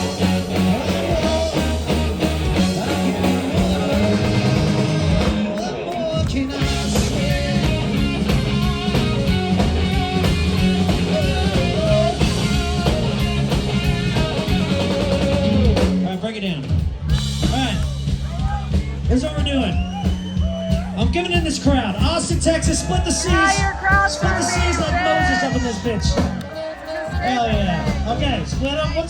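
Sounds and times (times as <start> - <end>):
person singing: 0.0 - 8.3, 10.7 - 13.2
electric guitar: 0.0 - 16.0
bass guitar: 0.0 - 29.0
drum kit: 0.0 - 29.0.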